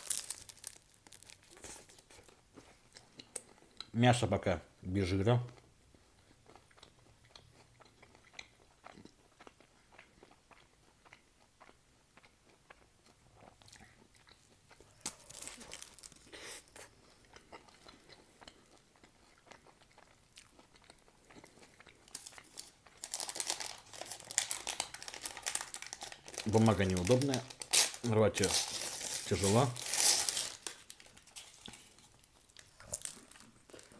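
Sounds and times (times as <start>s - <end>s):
paper wrapper crinkling and tearing: 0.0s - 2.3s, 15.0s - 16.9s, 22.1s - 33.9s
close-up chewing: 5.6s - 27.7s, 30.4s - 33.9s.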